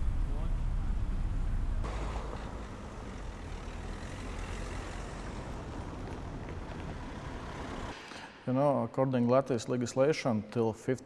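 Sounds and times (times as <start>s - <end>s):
vehicle engines rumbling: 0.0s - 8.0s.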